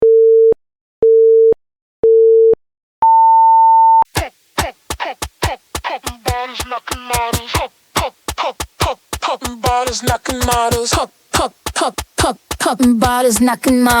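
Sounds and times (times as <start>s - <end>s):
electronic dance music: 4.2s - 14.0s.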